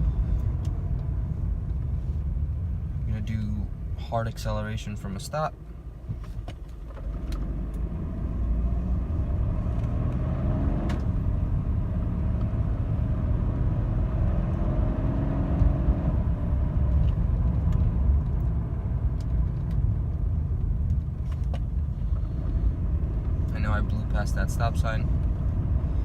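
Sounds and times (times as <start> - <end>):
car engine accelerating hard: 7.0 - 26.0.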